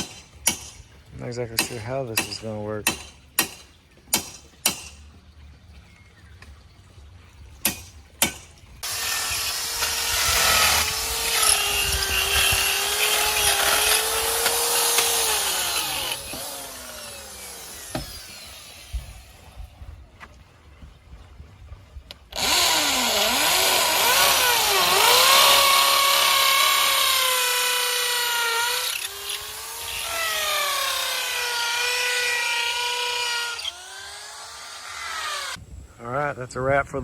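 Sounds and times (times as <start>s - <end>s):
sharp knocks: 1.6s - 5.1s
handheld power tool whining: 8.8s - 19.3s, 22.3s - 35.6s.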